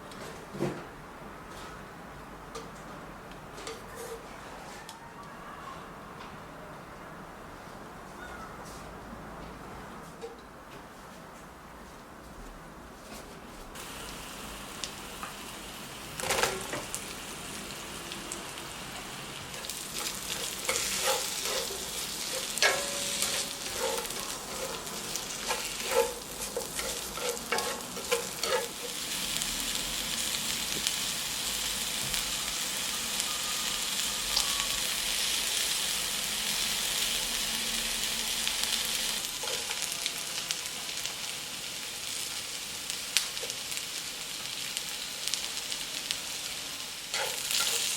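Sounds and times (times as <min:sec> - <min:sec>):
food sizzling in a pan: 0:13.8 - 0:47.9
utensil scraping a pan: 0:19.9 - 0:29.1.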